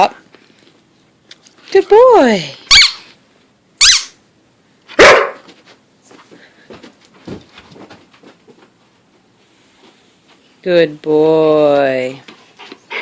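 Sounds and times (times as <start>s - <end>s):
dog barking: 4.9s - 5.5s.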